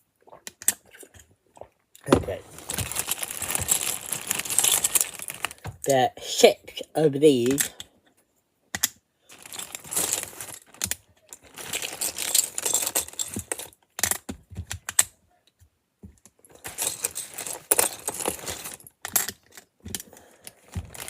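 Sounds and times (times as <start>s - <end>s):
plastic pieces clattering: 2.1s - 5.8s, 9.3s - 15.0s, 16.5s - 21.0s.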